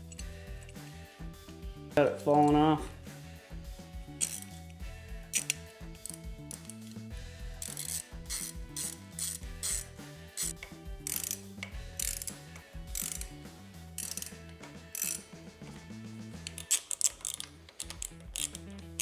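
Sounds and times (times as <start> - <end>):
background music with bass: 0.0 - 19.0
ratchet wrench clicking: 4.2 - 4.7, 5.3 - 7.0, 7.6 - 13.4, 14.0 - 15.4, 16.4 - 19.0.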